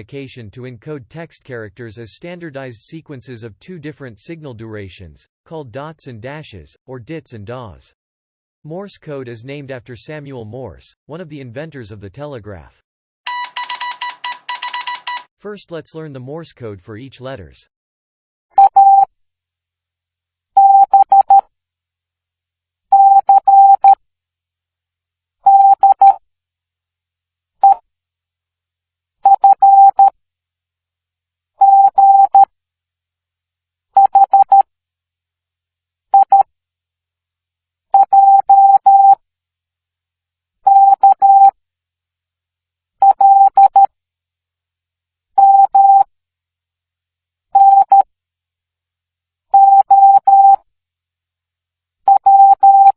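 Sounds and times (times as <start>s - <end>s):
morse code beeps: 13.3s - 15.3s, 20.6s - 21.4s, 23.0s - 24.0s, 25.5s - 26.2s, 29.3s - 30.1s, 31.6s - 32.5s, 34.0s - 34.6s, 36.2s - 36.4s, 38.0s - 39.2s, 40.7s - 41.5s, 43.0s - 43.9s, 45.4s - 46.1s, 47.6s - 48.0s, 49.6s - 50.6s, 52.1s - 52.9s.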